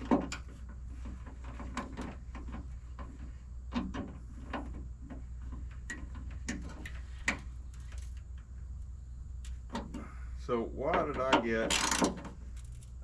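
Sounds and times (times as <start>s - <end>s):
steady low hum: 0.0s - 13.0s
hand tools clicking and knocking: 10.9s - 12.8s.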